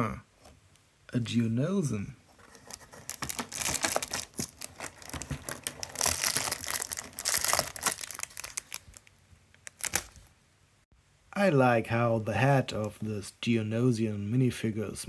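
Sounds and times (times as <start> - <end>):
plastic packaging crinkling: 2.4 - 10.3.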